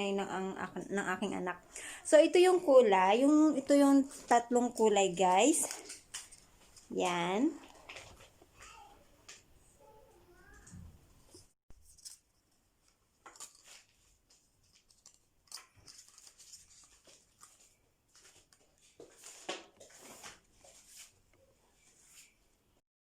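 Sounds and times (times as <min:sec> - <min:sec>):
faint clicks and rustles: 0:05.4 - 0:22.6.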